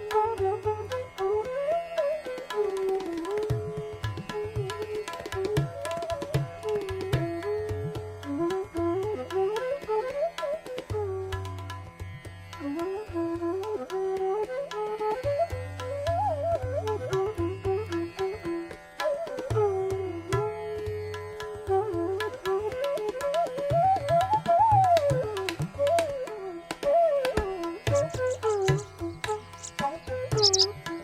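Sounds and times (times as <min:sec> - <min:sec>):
flute melody: 0:22.6 - 0:30.7
tabla playing: 0:27.8 - 0:30.8.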